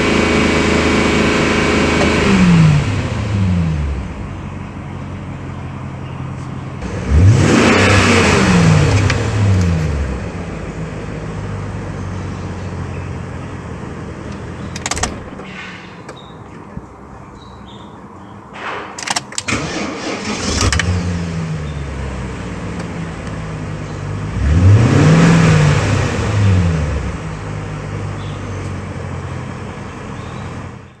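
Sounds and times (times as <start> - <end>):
car engine idling and revving: 0.0 - 31.0
sharp knocks: 18.5 - 19.4.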